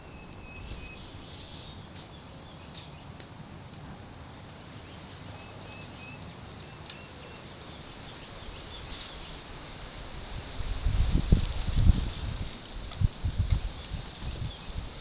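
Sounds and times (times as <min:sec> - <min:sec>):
faint bird chirps: 0:00.0 - 0:03.1, 0:03.9 - 0:09.4
low background noise: 0:00.0 - 0:15.0.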